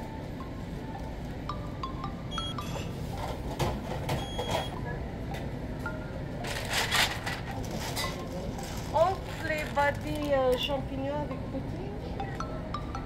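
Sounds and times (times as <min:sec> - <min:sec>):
low background hum: 0:00.0 - 0:13.0
short electronic beeps: 0:02.3 - 0:02.9.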